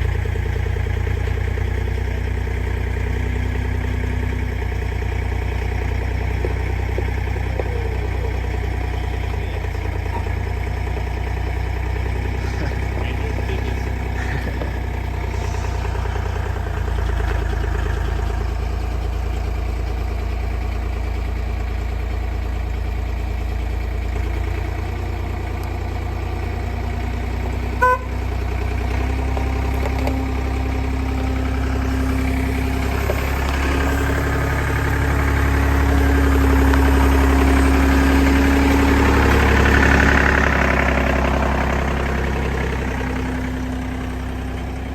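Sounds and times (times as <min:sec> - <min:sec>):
vehicle engine running: 0:00.0 - 0:44.9
car horn toot: 0:27.7 - 0:28.3.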